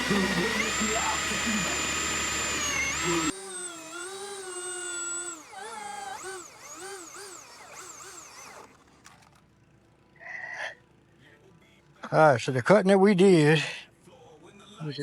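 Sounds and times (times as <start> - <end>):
electric chainsaw motor whining: 0.0 - 9.4.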